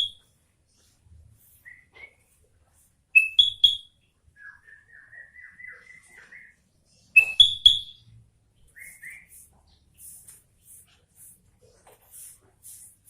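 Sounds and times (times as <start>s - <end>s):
bulbul chirping: 0.0s - 0.2s, 3.2s - 4.0s, 7.2s - 8.1s, 8.7s - 10.2s.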